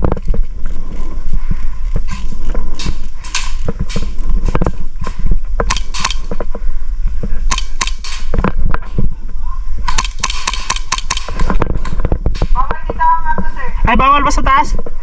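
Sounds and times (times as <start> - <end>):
airsoft guns firing: 5.7 - 6.4, 7.5 - 8.4, 9.9 - 11.6.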